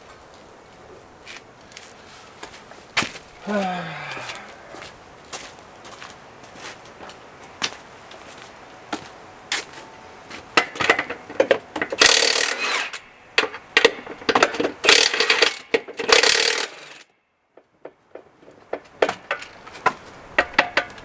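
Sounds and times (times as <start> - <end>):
metal clicks and knocks: 10.6 - 12.6, 13.4 - 16.6, 17.6 - 21.0
power tool bursts: 11.8 - 17.1.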